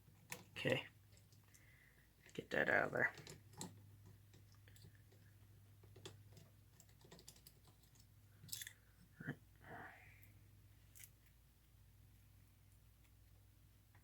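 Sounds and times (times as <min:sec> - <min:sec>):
small tools clicking and tapping: 0:03.1 - 0:08.8.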